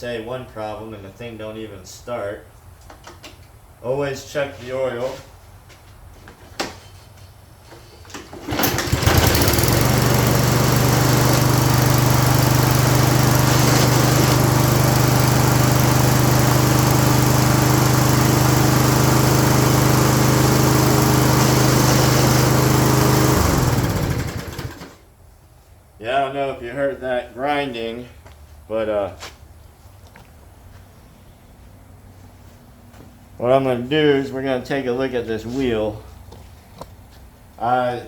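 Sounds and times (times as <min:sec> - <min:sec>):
push mower engine running: 0:08.4 - 0:25.0
grinding drive gears: 0:08.6 - 0:15.8.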